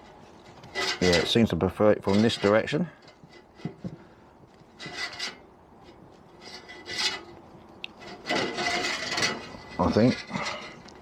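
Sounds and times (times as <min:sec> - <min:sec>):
metal scraping and rubbing: 0:00.0 - 0:11.0
metal squeak: 0:04.8 - 0:10.8.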